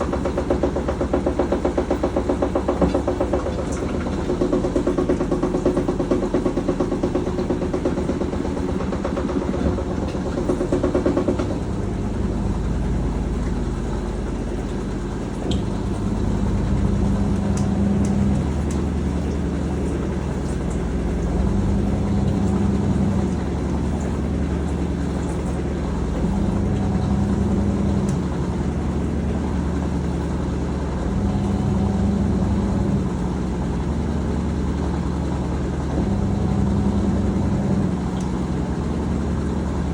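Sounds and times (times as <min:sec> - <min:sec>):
washing machine motor surging: 0:00.0 - 0:39.9
pulsing pitched hum: 0:09.3 - 0:39.9.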